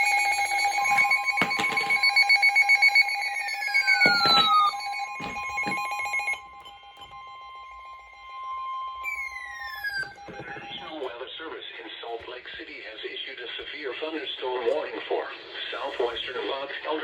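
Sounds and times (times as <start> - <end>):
two-tone alarm: 0.0 - 11.1.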